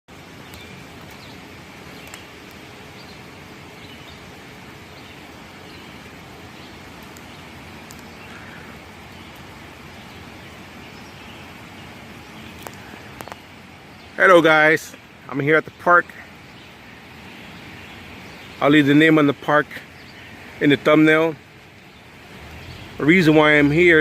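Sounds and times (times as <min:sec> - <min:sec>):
outdoor background noise: 0:00.1 - 0:24.0
light clicks: 0:12.5 - 0:13.4
bird chirps: 0:21.8 - 0:24.0.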